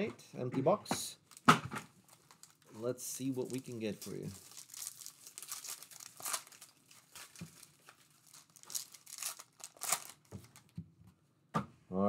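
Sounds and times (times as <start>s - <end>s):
wrappers tearing and crinkling: 1.2s - 10.7s.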